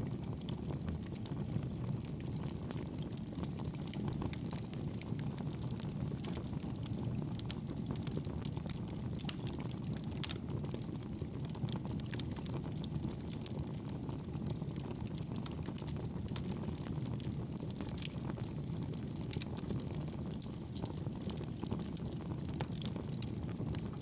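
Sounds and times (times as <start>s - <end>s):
fire crackling: 0.1s - 24.0s.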